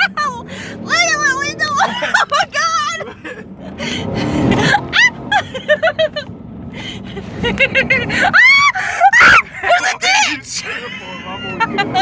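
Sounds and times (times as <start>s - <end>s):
vehicle rumbling through snow: 0.0s - 8.9s
woman laughing: 1.8s - 3.4s, 7.2s - 12.0s
woman shrieking: 8.2s - 10.8s.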